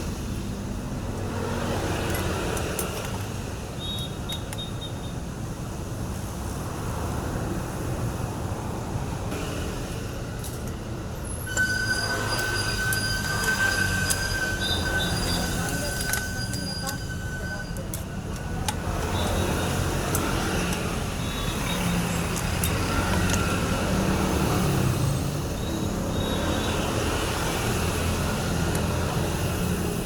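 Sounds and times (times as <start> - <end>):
high-pitched squeal: 11.2 - 24.4.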